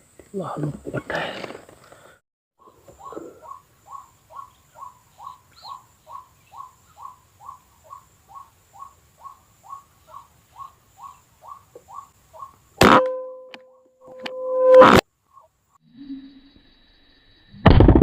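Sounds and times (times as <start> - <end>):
waterhen calling: 2.6 - 12.6.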